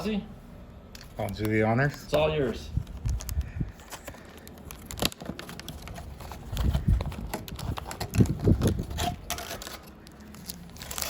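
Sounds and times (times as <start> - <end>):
wind buffeting microphone: 2.7 - 3.8, 6.4 - 9.3
plastic wrapper crinkling and tearing: 2.7 - 11.0.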